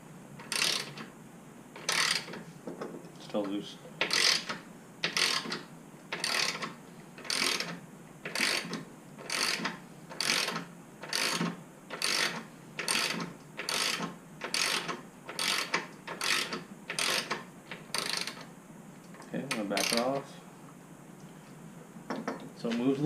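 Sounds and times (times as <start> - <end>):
ratchet wrench clicking: 0.4 - 1.0, 1.8 - 2.4, 4.0 - 5.6, 6.2 - 18.4, 19.8 - 20.1.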